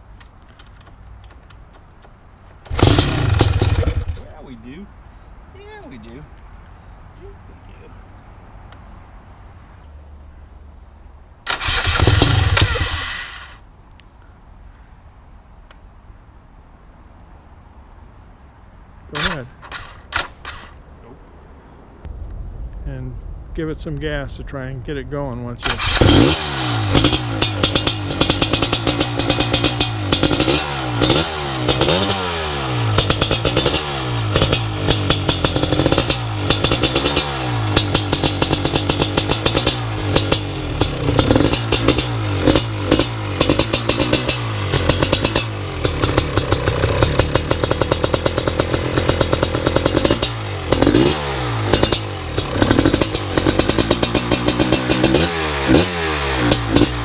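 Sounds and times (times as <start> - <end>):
dirt bike engine revving: 2.7 - 4.3, 11.5 - 13.6, 25.6 - 57.0.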